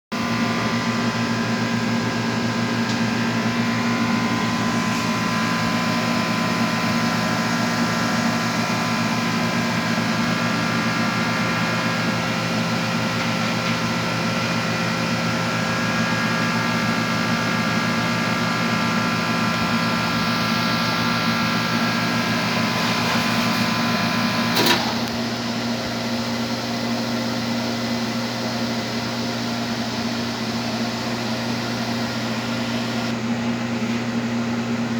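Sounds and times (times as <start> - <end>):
coating equipment humming: 0.2 - 34.9.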